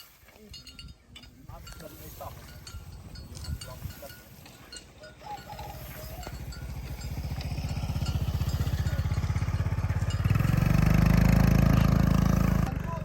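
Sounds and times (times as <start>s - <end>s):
diesel engine low throb: 6.3s - 12.8s.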